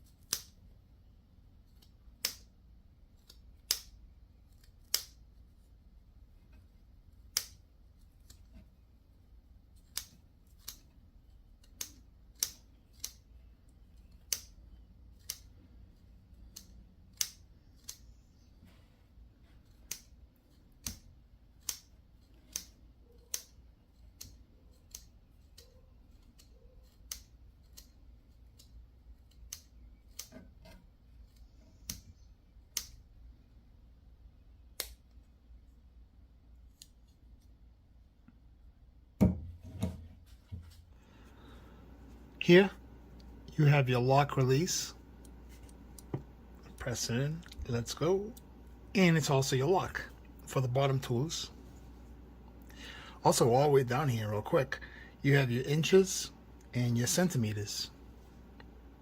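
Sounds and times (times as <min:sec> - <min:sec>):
scissors snipping with metallic clicks: 0:00.1 - 0:00.6, 0:01.7 - 0:02.5, 0:03.2 - 0:05.2, 0:07.3 - 0:07.6, 0:09.8 - 0:10.9, 0:11.6 - 0:15.7, 0:16.4 - 0:18.2, 0:19.6 - 0:30.4, 0:31.3 - 0:33.1, 0:34.7 - 0:35.2.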